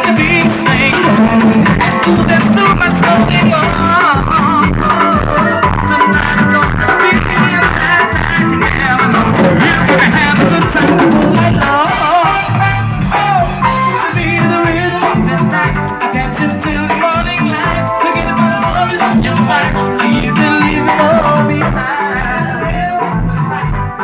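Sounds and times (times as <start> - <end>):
shaker rhythm: 0.0 - 23.9
heavy pulsing bass line: 0.0 - 24.0
loud music with singing: 0.0 - 24.0.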